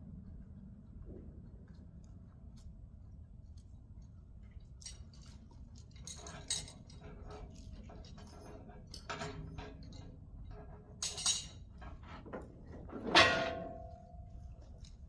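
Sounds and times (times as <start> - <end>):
faint low rumble: 0.0 - 6.0
metal chain clinking and rattling: 4.7 - 12.2.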